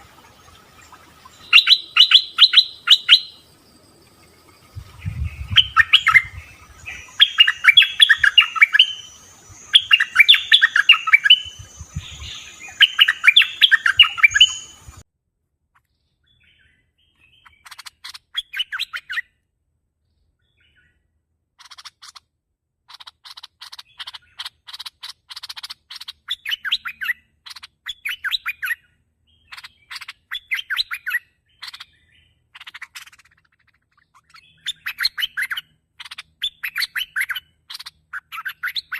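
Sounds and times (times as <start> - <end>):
faint bird chirps: 0.0 - 15.0, 15.7 - 19.4, 20.0 - 38.9
bulbul chattering calls: 0.8 - 3.5, 4.7 - 15.0, 21.6 - 22.3, 22.9 - 38.9.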